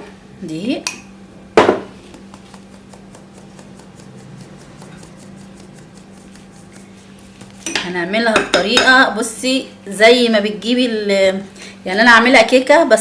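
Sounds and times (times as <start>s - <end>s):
kitchen ware knock: 1.6s - 1.9s.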